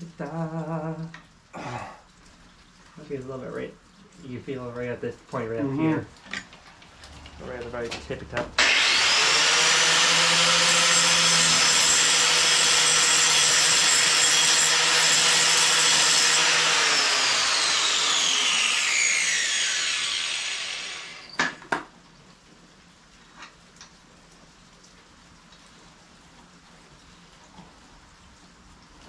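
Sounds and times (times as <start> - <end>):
electric grinder whining: 8.6 - 21.5.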